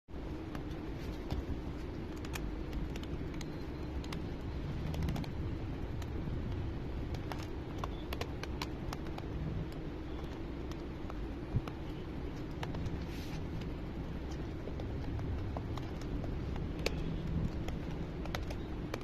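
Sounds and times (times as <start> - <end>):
steady low hum: 0.1 - 19.0.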